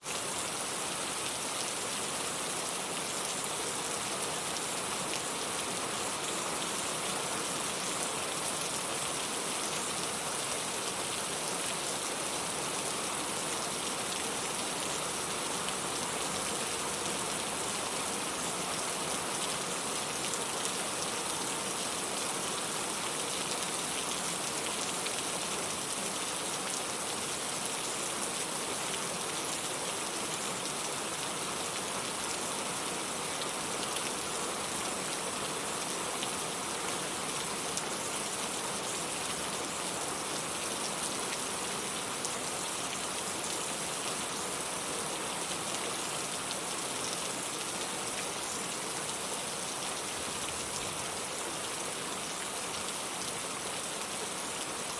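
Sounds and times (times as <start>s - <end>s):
steady rain hiss: 0.0s - 54.9s.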